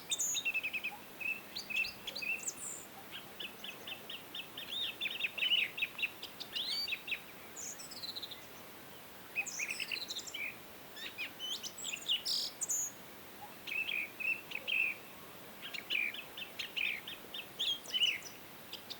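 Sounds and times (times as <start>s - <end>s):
faint steady hiss: 0.0s - 18.9s
songbirds singing and chirping: 0.0s - 18.9s.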